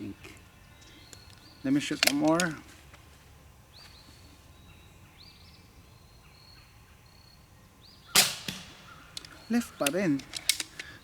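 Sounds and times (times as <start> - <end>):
faint bird chirps: 3.7 - 8.2
air pistol shot: 8.2 - 9.0.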